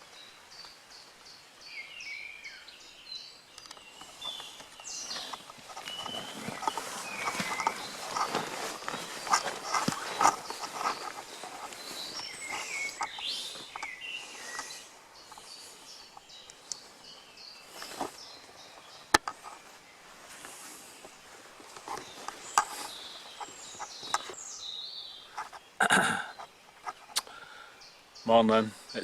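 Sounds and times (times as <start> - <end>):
birds calling and singing: 0.0 - 29.0
light rustles: 3.6 - 25.7.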